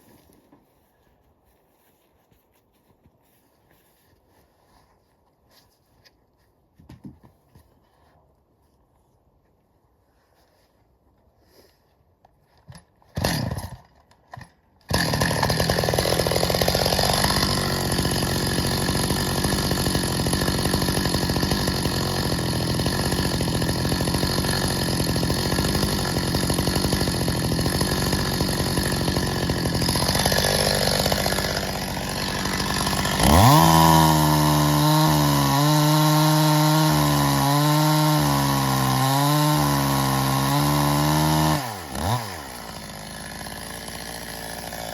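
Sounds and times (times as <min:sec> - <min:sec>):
chainsaw running: 0:13.1 - 0:44.9.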